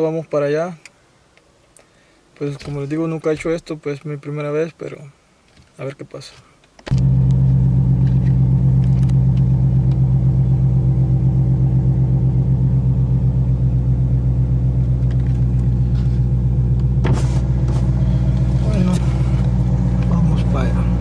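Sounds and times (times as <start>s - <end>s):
car engine idling: 6.9s - 21.0s.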